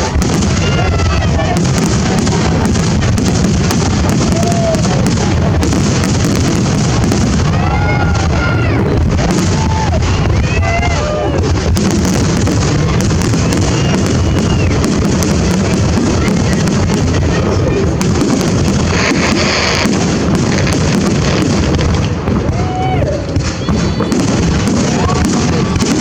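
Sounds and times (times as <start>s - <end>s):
onlookers calling out: 0.0s - 2.7s, 7.1s - 18.0s
fireworks bursting: 0.0s - 26.0s.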